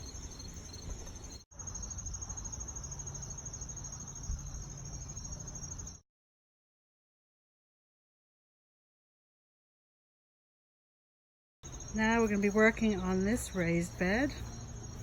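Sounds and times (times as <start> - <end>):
crickets chirping: 0.0 - 6.0, 11.6 - 15.0.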